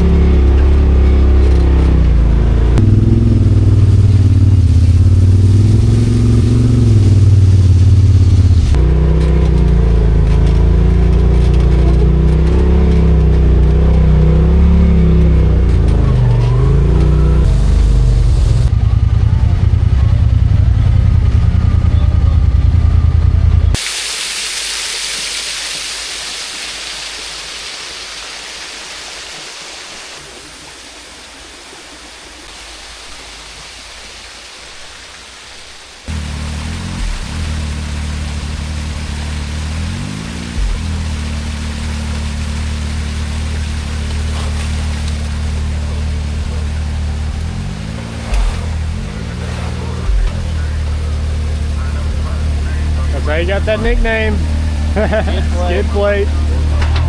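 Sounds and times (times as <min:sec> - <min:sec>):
off-road vehicle engine under load: 0:00.0 - 0:23.8, 0:36.0 - 0:57.0
steady rushing hiss: 0:03.1 - 0:08.8.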